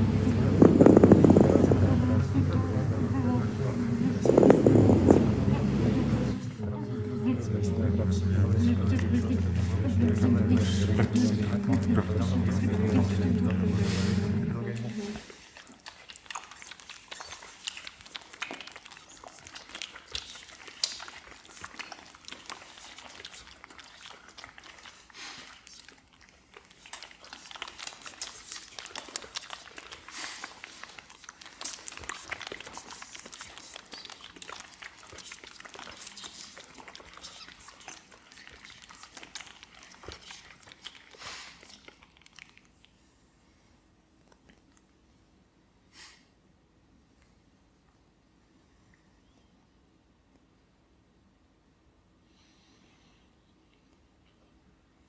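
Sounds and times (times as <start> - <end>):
people making lip-smacking clicks: 16.4 - 23.7, 26.8 - 42.8.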